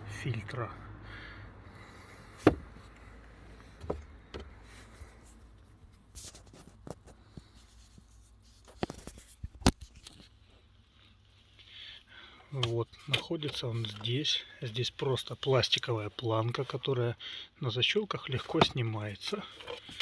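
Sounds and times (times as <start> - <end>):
plastic car trim clicking: 2.4 - 2.8.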